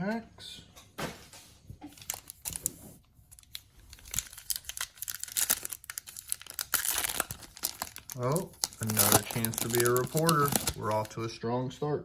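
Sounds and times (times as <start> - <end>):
card pack wrappers crinkling and tearing: 1.8 - 11.3.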